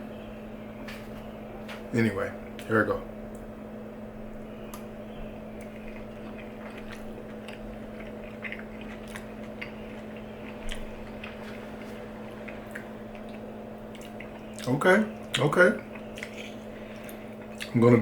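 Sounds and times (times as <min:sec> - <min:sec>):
steady background hum: 0:00.0 - 0:18.0
person chewing: 0:04.7 - 0:17.8.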